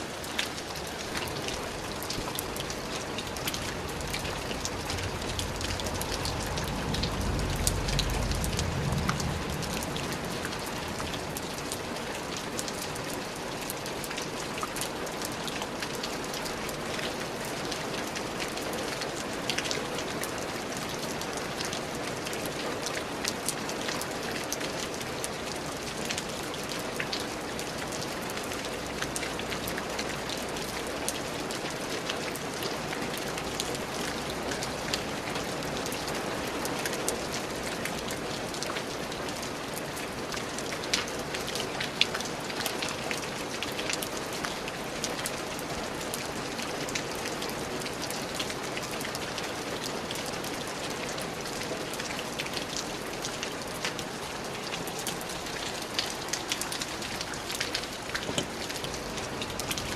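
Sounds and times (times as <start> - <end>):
steady rain patter: 0.0 - 59.9.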